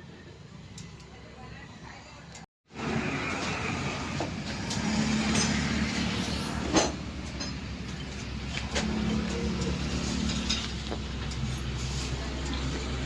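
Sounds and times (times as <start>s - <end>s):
road noise: 0.0s - 13.0s
vehicle engine hum: 2.7s - 13.0s.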